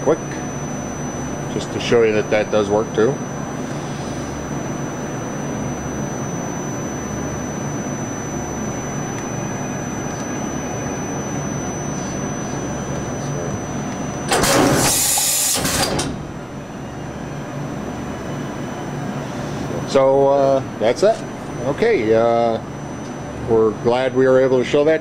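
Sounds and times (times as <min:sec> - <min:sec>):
machine humming with high whine: 0:00.0 - 0:25.0
loud hiss: 0:14.4 - 0:15.9.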